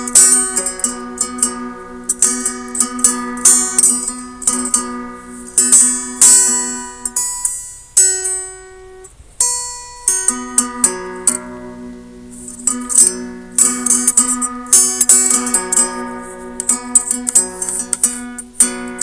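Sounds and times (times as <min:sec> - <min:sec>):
guitar strummed and plucked: 0:00.0 - 0:19.0.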